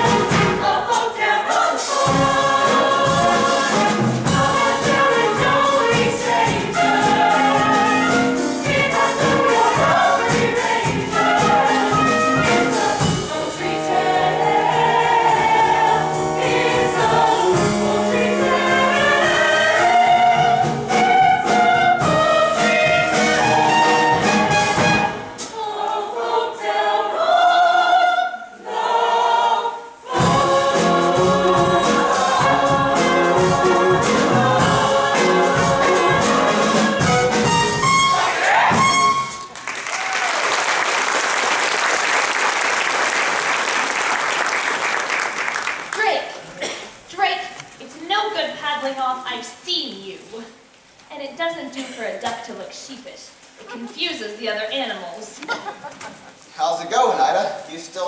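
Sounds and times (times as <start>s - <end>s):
instrumental accompaniment: 0.0s - 25.6s, 30.1s - 39.7s
group singing: 0.0s - 39.5s.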